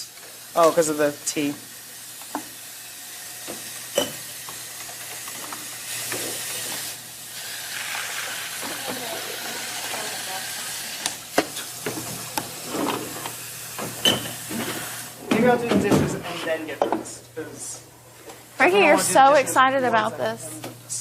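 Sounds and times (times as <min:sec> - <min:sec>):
steady kitchen hiss: 0:00.0 - 0:21.0
kitchenware clinking: 0:03.9 - 0:04.3, 0:13.8 - 0:14.7.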